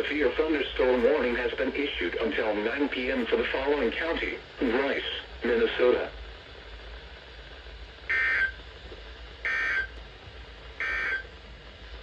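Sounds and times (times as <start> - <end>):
faint steady hum: 0.0 - 12.0
buzzy digital data tones: 8.1 - 8.6, 9.4 - 9.9, 10.8 - 11.3.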